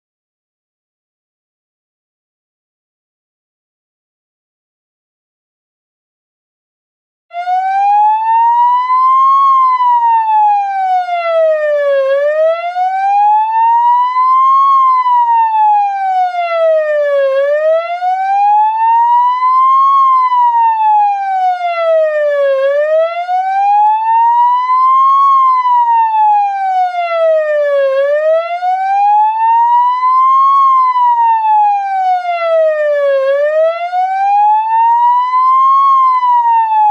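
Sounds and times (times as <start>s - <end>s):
ambulance siren wailing: 7.3s - 36.9s.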